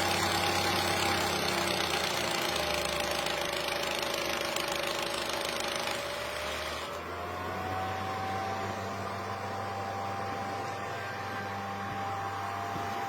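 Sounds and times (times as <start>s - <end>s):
film projector motor whine: 0.0s - 13.0s
cooling fan rush of air: 7.0s - 13.0s.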